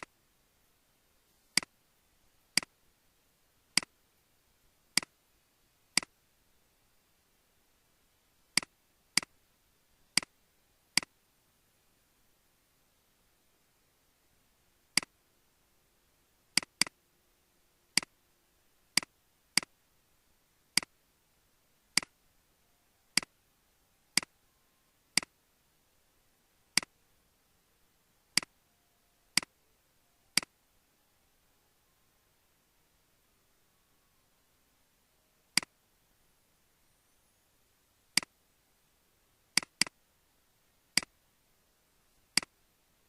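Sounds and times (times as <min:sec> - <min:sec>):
computer mouse clicks: 0:16.6 - 0:17.0, 0:39.6 - 0:40.0.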